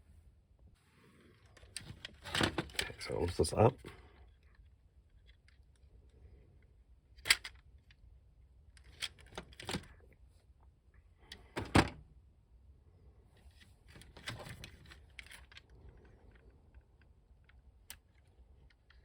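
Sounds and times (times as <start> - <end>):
plastic parts clicking: 7.2 - 8.0.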